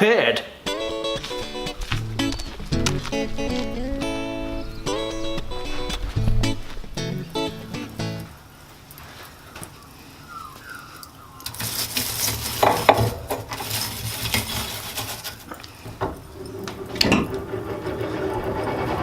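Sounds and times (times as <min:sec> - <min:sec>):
steady rushing noise: 0:00.6 - 0:11.5
low hum: 0:00.6 - 0:11.6
metal clanking and clinking: 0:00.7 - 0:08.4, 0:15.4 - 0:19.0.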